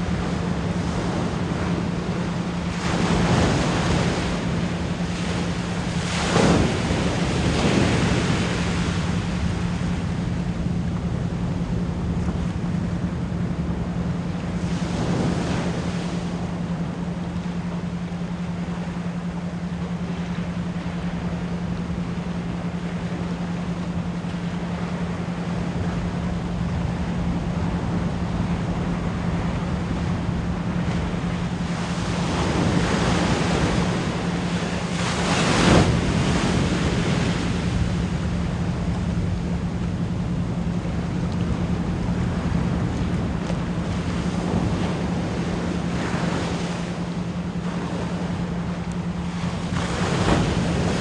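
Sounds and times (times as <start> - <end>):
low pulsed pure tone: 0.0 - 51.0
ocean waves washing ashore: 0.0 - 51.0.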